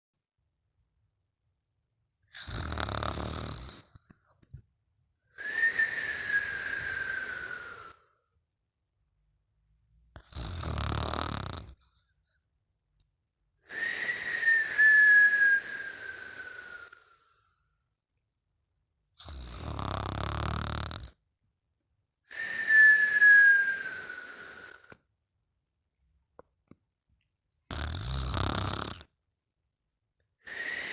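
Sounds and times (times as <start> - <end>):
person snoring with whistle: 2.3 - 4.0, 5.4 - 8.2, 10.2 - 11.8, 13.6 - 17.4, 19.2 - 21.2, 22.3 - 25.1, 27.7 - 29.1, 30.4 - 30.9.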